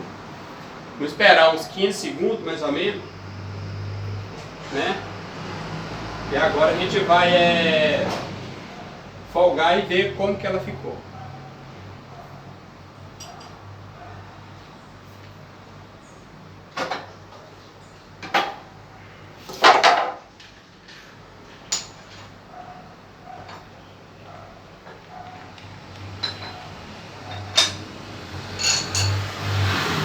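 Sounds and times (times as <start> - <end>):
metal parts clanking: 28.5 - 29.3.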